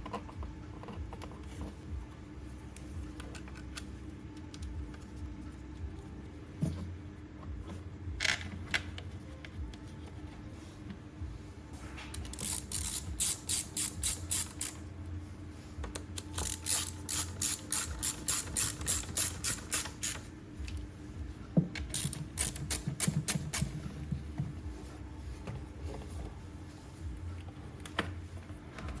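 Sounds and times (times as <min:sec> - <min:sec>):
ratchet wrench clicking: 0:12.2 - 0:14.8, 0:16.2 - 0:20.2, 0:21.9 - 0:23.4.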